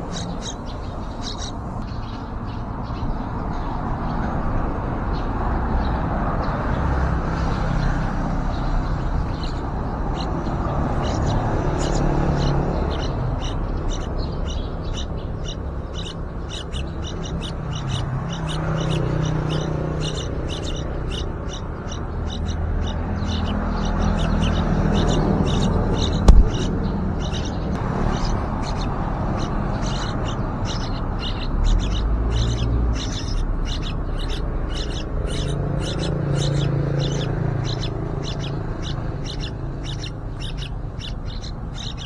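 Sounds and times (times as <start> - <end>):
nestlings chirping: 0.0 - 42.0
steady low rumble: 19.6 - 41.8.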